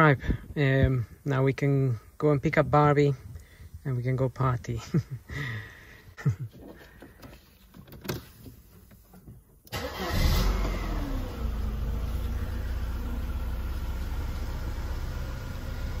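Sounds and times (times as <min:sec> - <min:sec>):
car engine starting and idling: 0:09.6 - 0:16.0.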